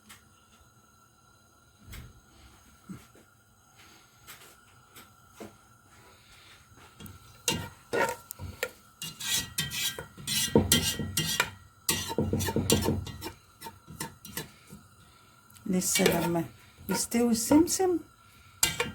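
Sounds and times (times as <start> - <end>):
seeds toasting in oil: 4.9 - 18.9
scraping against a pot: 6.9 - 17.3, 18.6 - 18.9.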